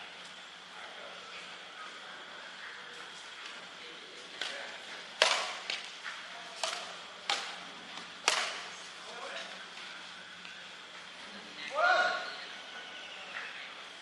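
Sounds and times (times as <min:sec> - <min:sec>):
rackets striking shuttlecock: 0:05.2 - 0:05.9, 0:06.6 - 0:08.8.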